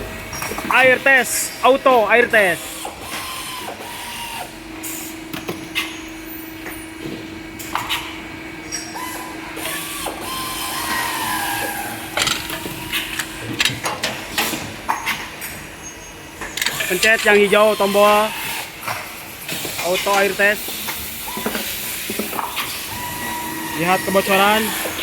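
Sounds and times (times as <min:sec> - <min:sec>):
factory machinery hum: 0:00.0 - 0:25.0
parts clicking and knocking: 0:12.2 - 0:15.6, 0:16.4 - 0:17.5.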